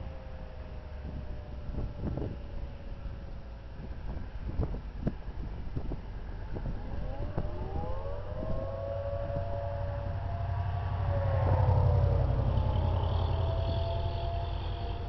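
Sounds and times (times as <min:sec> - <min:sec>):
steady low rumble: 0:00.7 - 0:15.0
tornado sirens winding up: 0:05.4 - 0:15.0.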